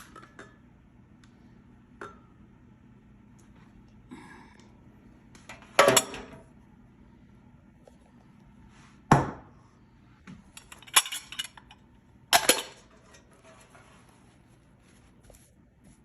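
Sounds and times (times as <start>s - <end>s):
dishes and utensils clinking: 10.5s - 11.8s, 12.4s - 13.7s.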